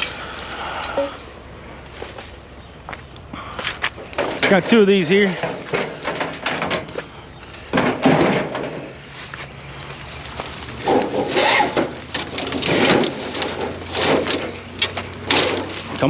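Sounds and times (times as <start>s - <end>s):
scrap knocking and rattling: 4.0s - 8.9s, 10.2s - 16.0s.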